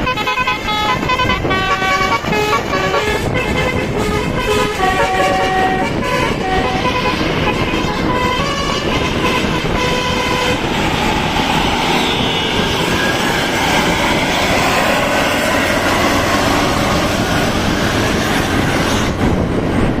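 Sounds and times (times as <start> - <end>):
musical multi-tone bus horn: 0.0 - 13.2
bus passing close: 0.0 - 20.0.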